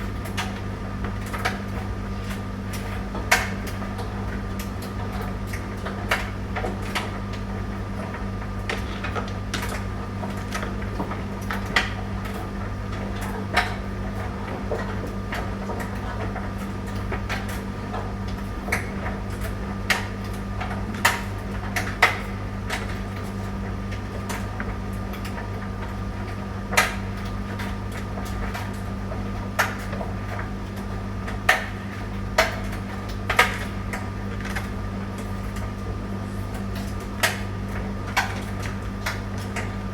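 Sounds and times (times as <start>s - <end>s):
tumble dryer hum: 0.0s - 26.7s.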